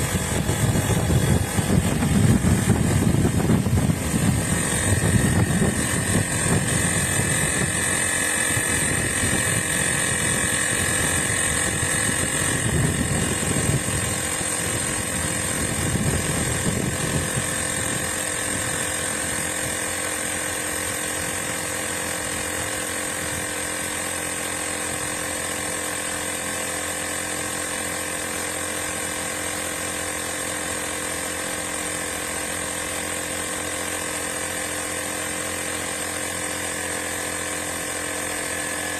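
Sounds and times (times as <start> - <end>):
compressor motor whining: 0.0 - 38.9.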